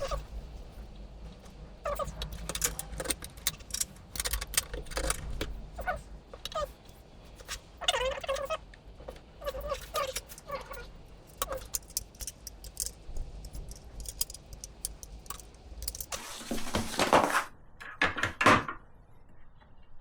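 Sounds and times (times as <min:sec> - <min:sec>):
scraping rattles: 0:00.0 - 0:18.7
tools clicking and clinking: 0:01.9 - 0:07.7, 0:08.3 - 0:16.4.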